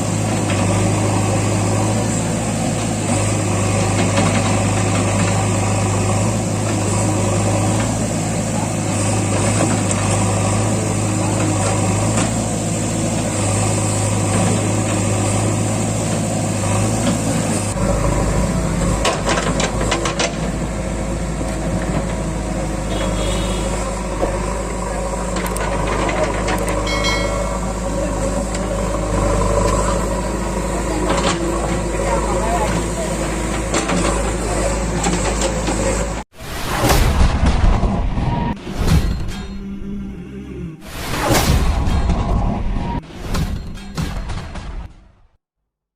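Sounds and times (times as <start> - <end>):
diesel engine running: 0.0 - 36.3.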